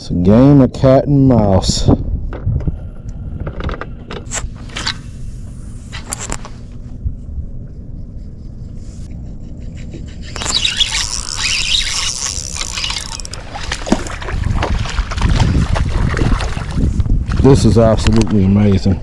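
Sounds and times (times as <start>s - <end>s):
boat engine rumble: 1.9s - 19.0s
rush of water or wind: 13.4s - 19.0s.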